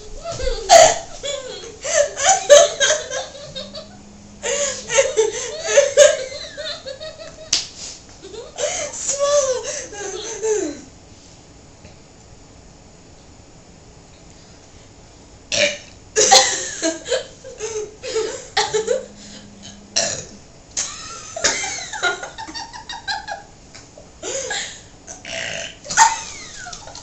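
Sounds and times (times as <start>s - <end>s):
girls burping: 2.5s - 6.6s, 18.6s - 21.8s.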